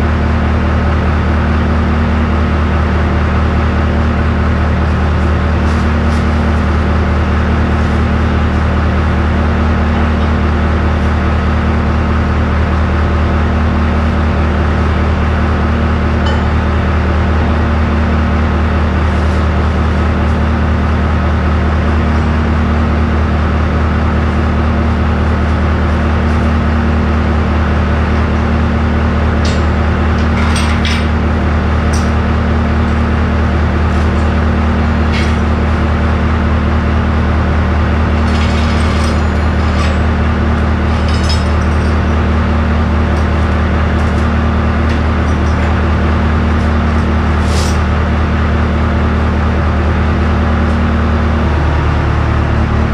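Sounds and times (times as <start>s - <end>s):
engine humming: 0.0s - 52.9s
metallic clinks and knocks: 16.2s - 16.6s.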